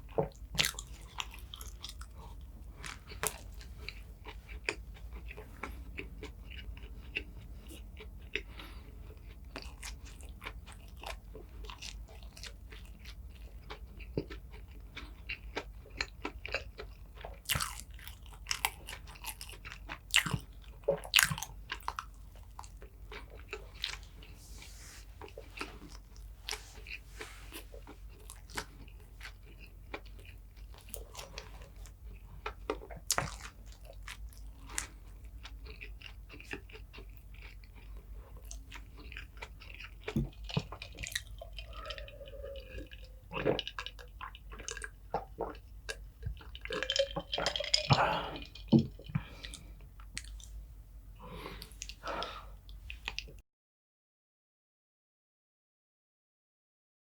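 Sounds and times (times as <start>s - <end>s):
person chewing food: 0.0s - 53.4s.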